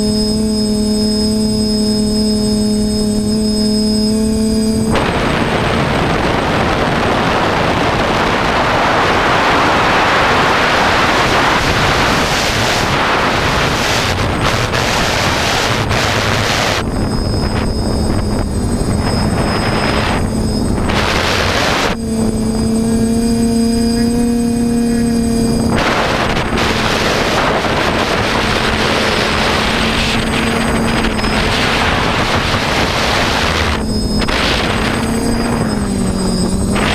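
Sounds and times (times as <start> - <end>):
quadcopter propellers humming: 0.0 - 36.9
wind rush on microphone: 0.0 - 36.9.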